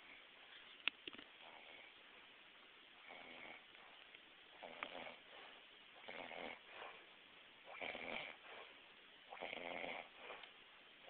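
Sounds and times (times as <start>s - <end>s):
man snoring faintly: 3.0s - 3.8s, 4.6s - 7.0s, 7.6s - 10.5s.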